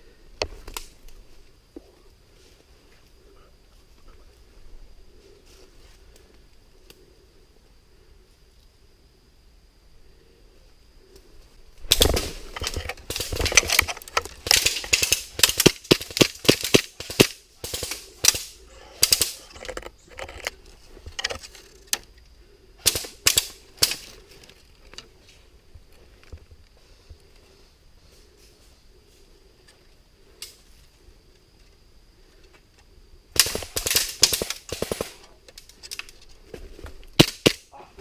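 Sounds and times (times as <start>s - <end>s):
airsoft guns firing: 11.9s - 19.4s, 22.8s - 24.0s, 33.3s - 35.2s, 37.2s - 37.7s.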